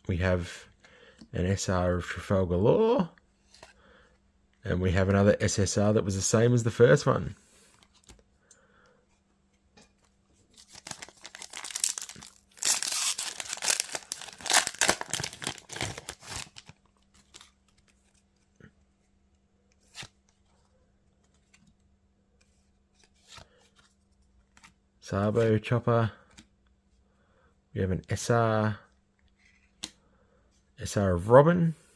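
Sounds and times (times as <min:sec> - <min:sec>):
foil wrapper tearing and crinkling: 0:10.6 - 0:17.4.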